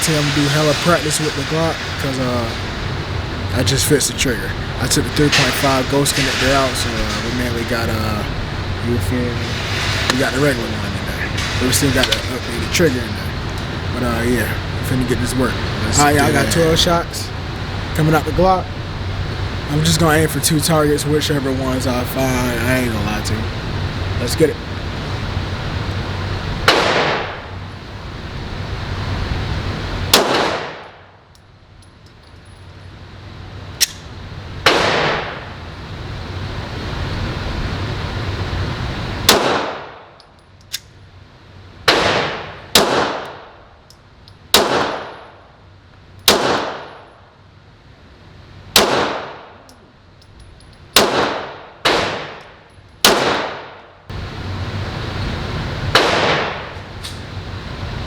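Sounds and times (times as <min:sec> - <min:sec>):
pistol shots indoors: 0:26.7 - 0:27.4, 0:30.1 - 0:31.1, 0:34.6 - 0:35.4, 0:39.3 - 0:40.1, 0:41.9 - 0:43.5, 0:44.5 - 0:45.4, 0:46.2 - 0:47.1, 0:48.7 - 0:49.6, 0:50.9 - 0:52.4, 0:53.0 - 0:53.8, 0:55.9 - 0:56.7.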